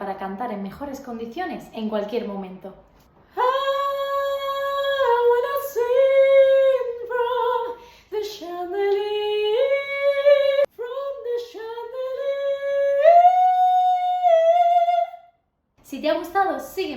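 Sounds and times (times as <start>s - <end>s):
woman singing unaccompanied: 3.4s - 15.2s.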